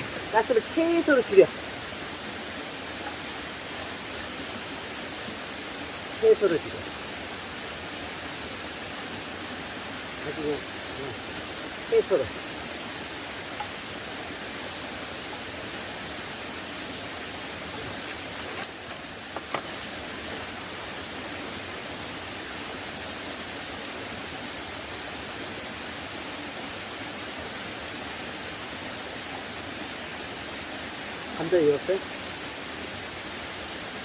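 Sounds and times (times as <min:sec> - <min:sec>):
creek flowing over rocks: 0:00.0 - 0:34.0
sharp clicks: 0:18.6 - 0:19.6.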